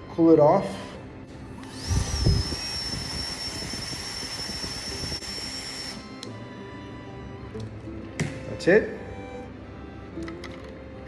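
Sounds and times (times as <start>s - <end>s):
gas hissing from a nozzle: 1.6s - 6.0s
high whistle: 1.8s - 6.0s.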